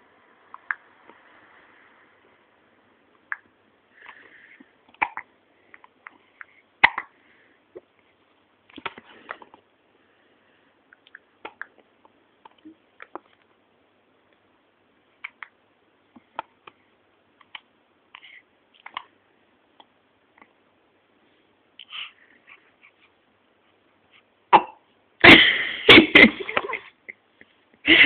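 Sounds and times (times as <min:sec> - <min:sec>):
baby hiccupping: 0:04.9 - 0:07.2, 0:24.5 - 0:24.8.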